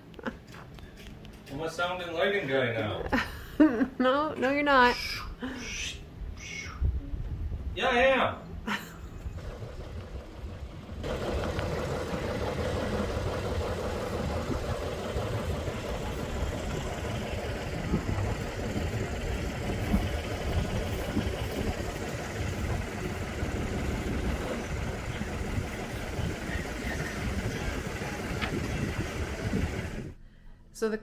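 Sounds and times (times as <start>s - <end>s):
engine idling: 9.1s - 30.2s.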